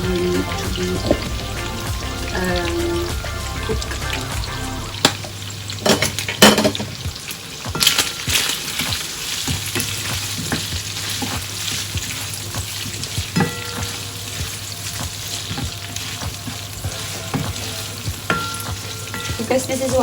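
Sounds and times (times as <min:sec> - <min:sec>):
food sizzling in a frying pan: 0:00.0 - 0:20.0.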